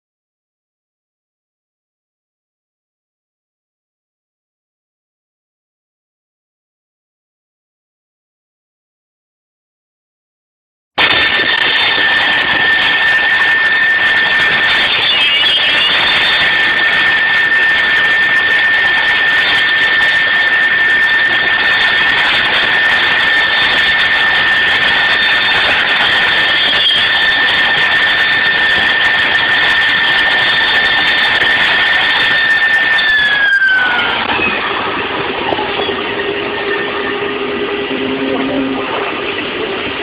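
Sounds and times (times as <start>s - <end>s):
machine spindle whining: 11.0s - 40.0s.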